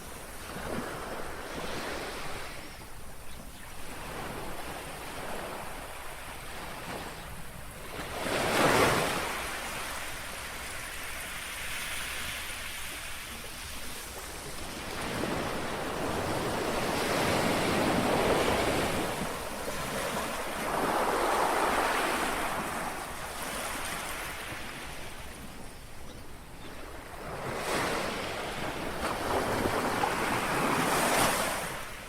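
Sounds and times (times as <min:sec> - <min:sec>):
small waves lapping on shore: 0:00.0 - 0:32.0.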